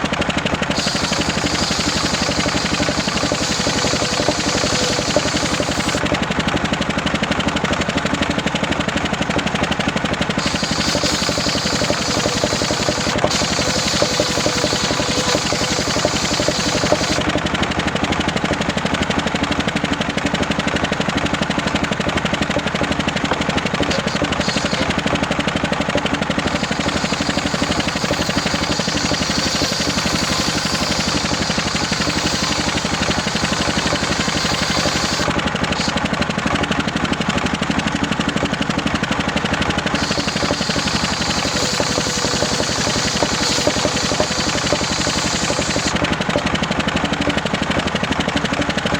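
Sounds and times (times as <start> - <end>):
circular saw running: 0.0 - 48.9
high hiss of saw blade: 0.7 - 6.0, 10.4 - 17.2, 23.9 - 24.9, 26.5 - 36.0, 40.0 - 46.0.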